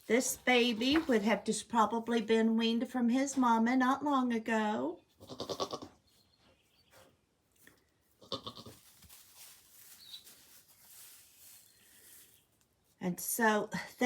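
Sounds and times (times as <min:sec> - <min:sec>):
goat bleating: 0:05.2 - 0:06.0, 0:08.2 - 0:08.8.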